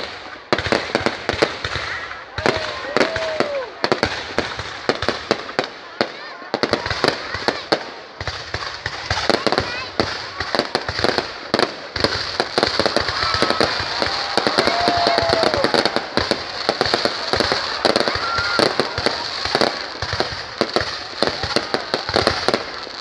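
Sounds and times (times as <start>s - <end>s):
fireworks crackling pops: 0.0s - 23.0s
fireworks whistling: 6.7s - 23.0s.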